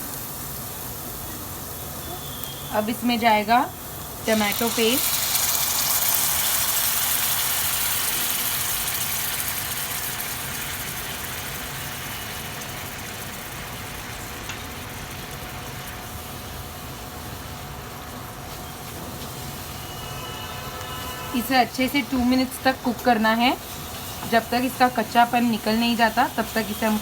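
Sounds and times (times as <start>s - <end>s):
tomato puree sizzling in oil: 0.0s - 27.0s.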